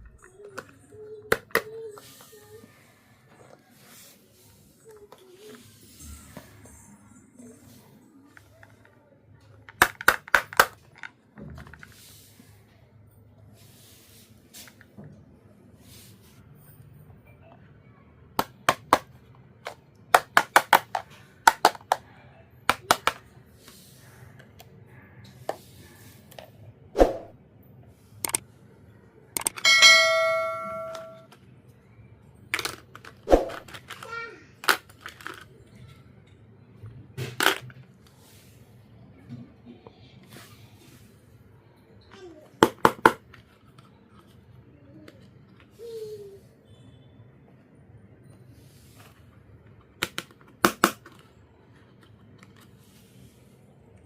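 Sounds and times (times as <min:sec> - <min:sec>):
toy pieces clicking and tapping: 0:00.2 - 0:02.2, 0:09.7 - 0:11.1, 0:18.4 - 0:22.0, 0:22.7 - 0:23.2, 0:29.4 - 0:29.7, 0:32.6 - 0:35.5
bright metallic ding: 0:29.6 - 0:31.2.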